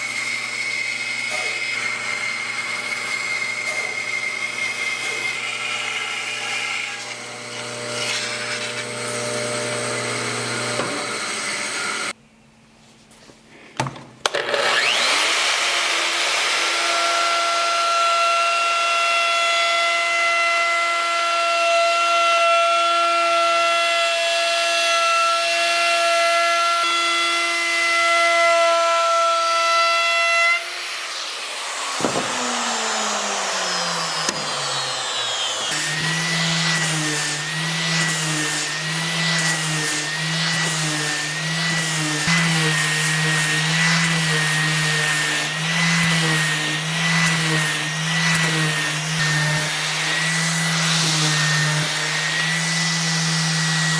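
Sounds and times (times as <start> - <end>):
power tool motor whining: 0.0 - 12.2, 14.3 - 17.8, 30.6 - 53.9.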